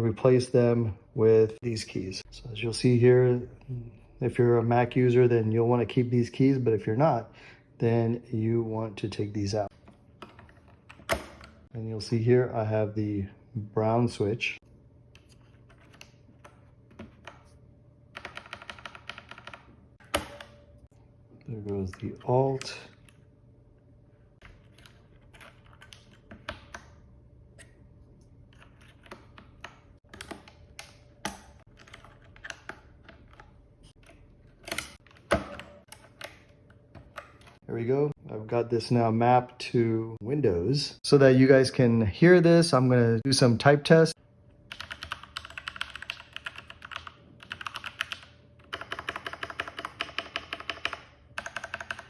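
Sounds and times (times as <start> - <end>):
keyboard keys clicking: 18.2 - 20.6, 44.7 - 52.0.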